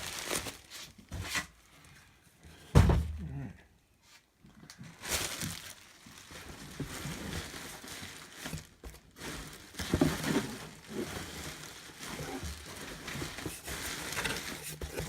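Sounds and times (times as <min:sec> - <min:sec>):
bubble wrap crinkling: 0:00.0 - 0:01.1, 0:04.8 - 0:15.0.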